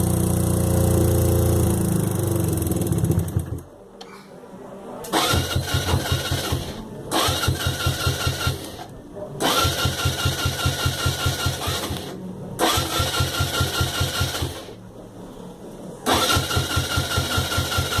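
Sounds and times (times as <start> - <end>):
electric starter whining: 5.0 - 14.8, 16.0 - 18.0
engine cranking chug: 5.1 - 14.8, 16.0 - 18.0.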